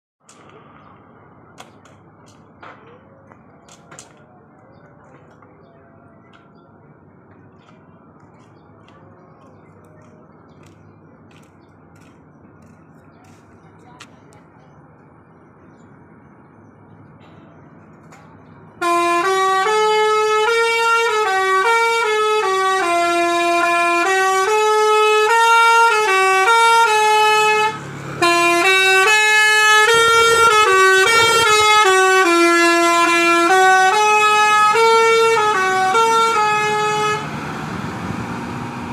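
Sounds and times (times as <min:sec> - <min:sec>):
musical bus air horn: 0:18.8 - 0:37.4.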